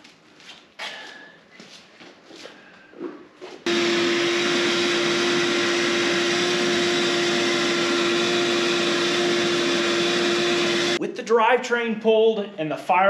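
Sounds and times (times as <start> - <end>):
machine motor whining hum: 3.7 - 11.0.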